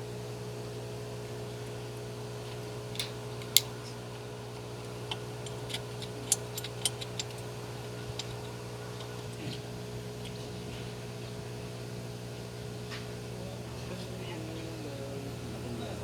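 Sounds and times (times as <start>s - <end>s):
drilling machine motor humming: 0.8s - 16.0s
sharp clicks: 2.4s - 9.5s.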